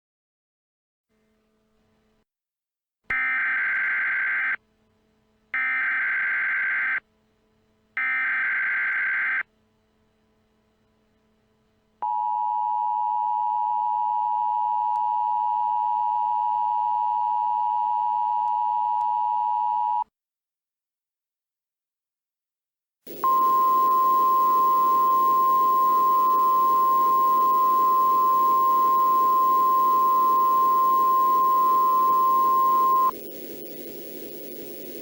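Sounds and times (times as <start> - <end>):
two-tone attention signal: 23.2 - 33.2.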